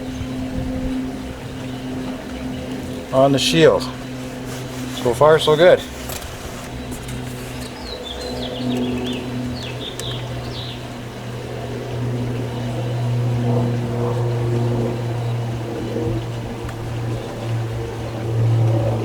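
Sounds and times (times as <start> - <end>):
low mechanical hum: 0.0 - 19.0
bird chirping: 1.6 - 10.9.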